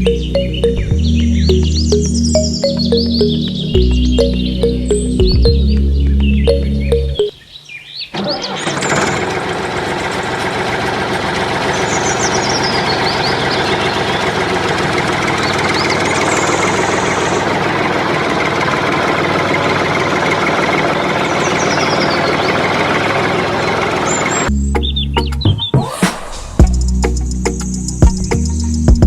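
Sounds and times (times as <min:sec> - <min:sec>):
engine starting and idling: 0:08.1 - 0:25.1.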